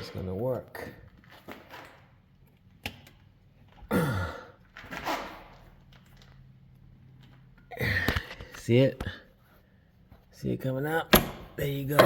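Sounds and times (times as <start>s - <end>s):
person grunting: 3.9s - 4.6s.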